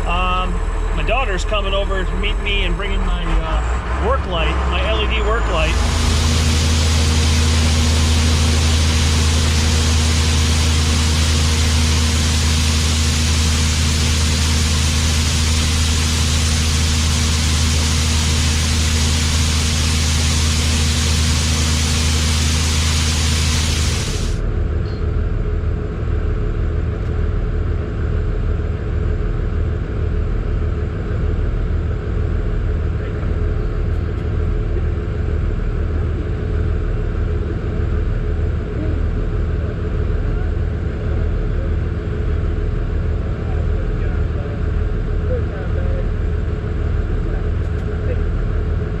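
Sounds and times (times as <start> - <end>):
truck engine rumbling: 0.0 - 27.6
loud hiss: 4.0 - 24.4.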